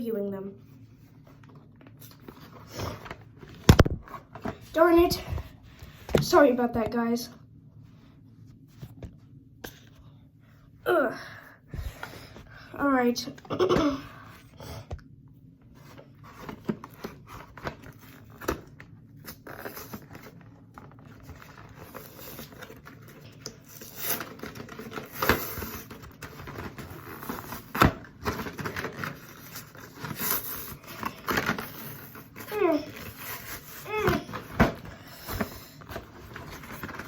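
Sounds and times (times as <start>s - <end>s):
packaging crinkling and tearing: 16.2s - 37.0s.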